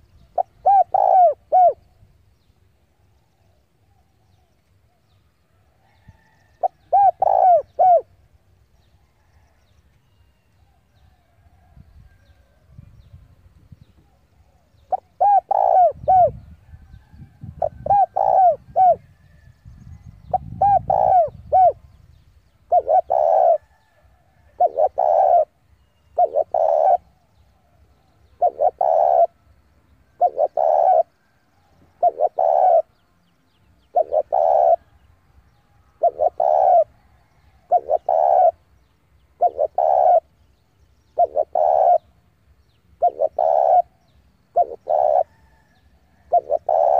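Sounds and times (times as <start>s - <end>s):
dove cooing: 0.0s - 1.8s, 6.0s - 8.3s, 14.0s - 19.2s, 20.3s - 21.9s, 22.7s - 29.4s, 30.1s - 33.0s, 33.8s - 35.0s, 35.9s - 38.7s, 39.3s - 40.4s, 41.1s - 42.2s, 43.0s - 46.9s.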